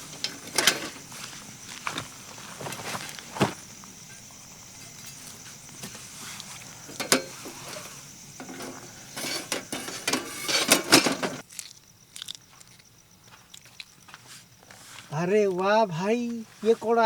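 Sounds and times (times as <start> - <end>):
cooking pots and utensils clinking: 0.0 - 1.3, 6.9 - 11.4.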